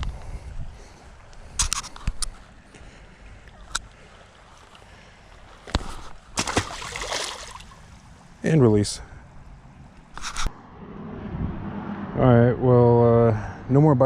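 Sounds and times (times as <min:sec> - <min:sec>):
steady outdoor hiss: 0:00.0 - 0:10.9.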